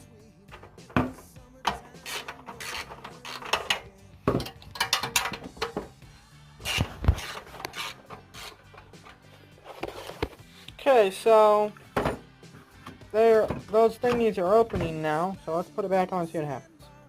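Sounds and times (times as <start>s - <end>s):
tools and metal parts clicking: 1.7s - 5.8s.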